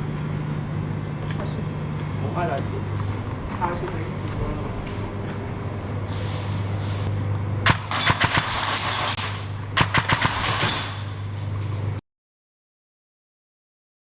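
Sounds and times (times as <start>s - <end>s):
steady low hum: 0.0s - 12.0s
airsoft guns firing: 7.6s - 11.2s.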